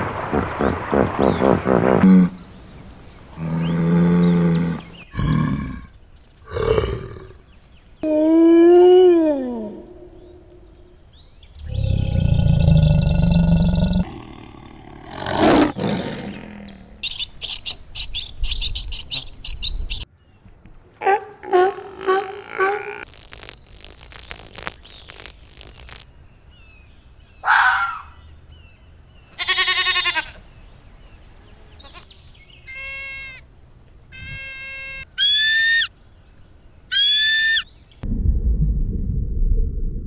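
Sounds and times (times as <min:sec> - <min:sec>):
animal calls: 0:00.1 - 0:07.4, 0:27.4 - 0:28.2, 0:34.1 - 0:35.9, 0:36.9 - 0:37.7.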